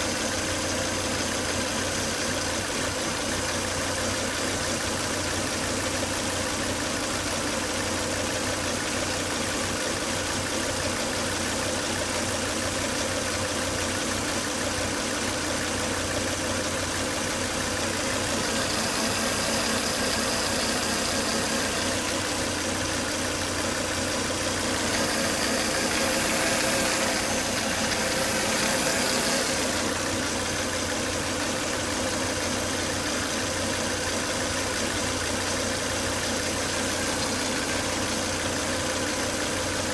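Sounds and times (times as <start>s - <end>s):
car engine idling with whine: 0.0s - 39.9s.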